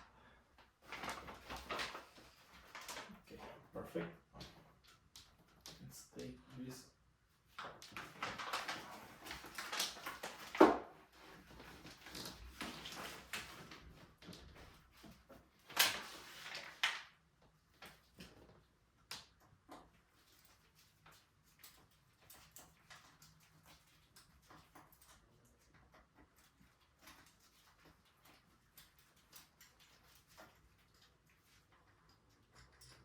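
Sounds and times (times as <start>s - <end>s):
packaging rustling: 0.8s - 3.3s, 7.8s - 14.7s, 15.6s - 17.1s.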